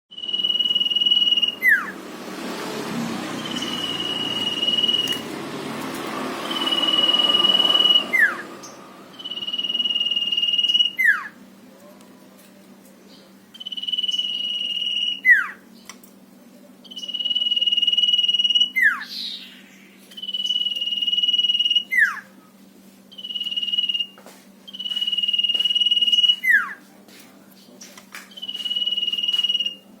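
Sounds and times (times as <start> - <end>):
songbird whistling: 0.1 - 2.0, 3.4 - 5.3, 6.4 - 11.4, 13.6 - 15.6, 16.8 - 22.3, 23.1 - 26.8, 28.3 - 29.9.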